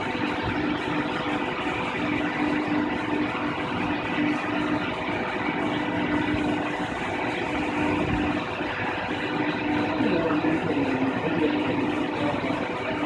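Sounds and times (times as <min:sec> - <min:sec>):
constant rushing noise: 0:00.0 - 0:13.0
industrial washer machine hum: 0:00.0 - 0:13.0.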